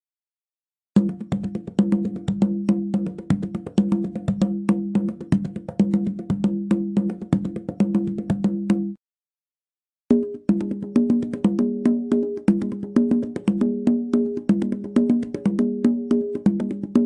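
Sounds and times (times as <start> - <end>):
pitched drum struck rapidly: 10.1 - 17.0.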